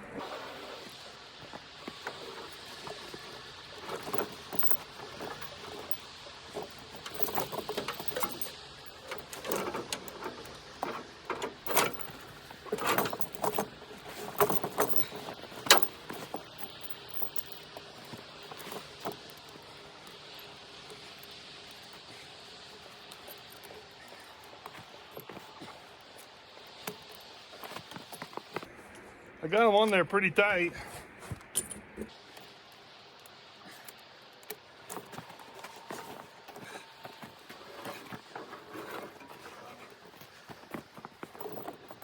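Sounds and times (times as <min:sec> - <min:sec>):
steel chain clinking and jangling: 0:01.9 - 0:28.6, 0:39.7 - 0:42.0.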